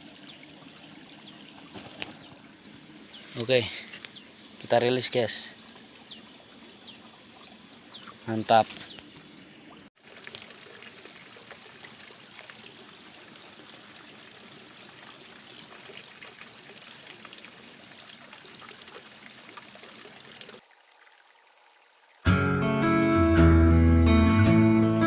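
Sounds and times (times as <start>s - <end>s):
stream water flowing: 0.0s - 23.4s.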